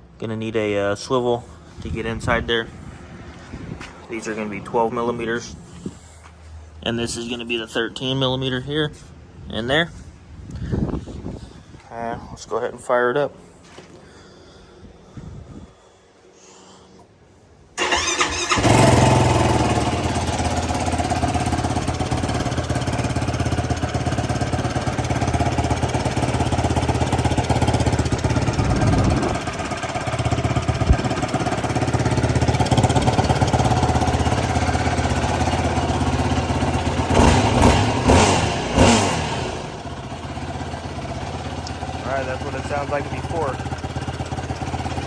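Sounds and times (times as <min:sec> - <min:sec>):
engine throttle blips: 0:17.8 - 0:45.0
motorcycle engine idling: 0:17.8 - 0:45.0.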